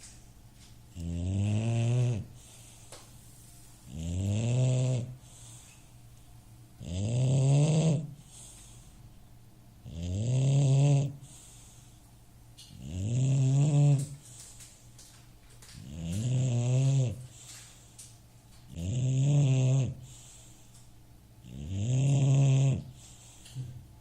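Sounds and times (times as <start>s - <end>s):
dog snoring loudly: 0.9s - 2.6s, 3.9s - 5.5s, 6.8s - 8.4s, 9.8s - 11.4s, 12.7s - 14.2s, 15.8s - 17.4s, 18.7s - 20.4s, 21.4s - 23.2s.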